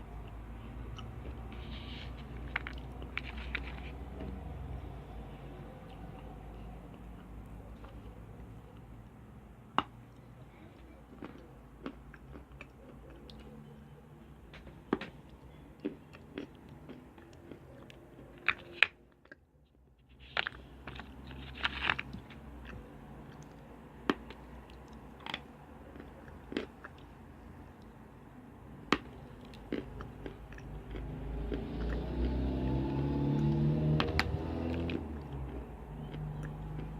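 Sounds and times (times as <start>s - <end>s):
chalk crunching while chewed: 0.2s - 4.0s, 20.1s - 27.2s, 28.9s - 32.5s, 34.2s - 36.9s.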